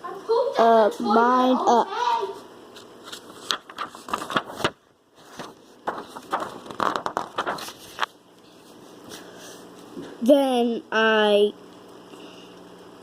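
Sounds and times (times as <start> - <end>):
handling noise rustling and scraping: 2.9 - 9.4.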